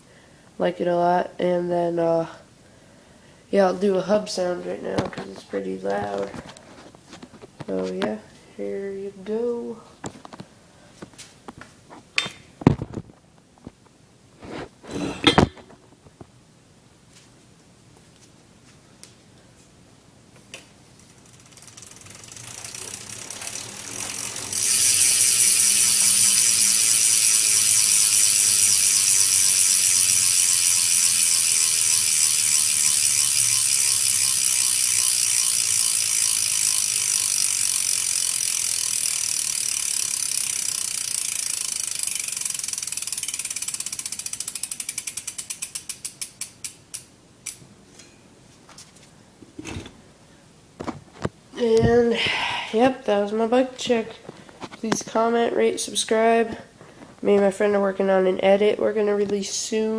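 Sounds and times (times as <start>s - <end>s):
bicycle hub ratcheting: 20.5s - 47.6s.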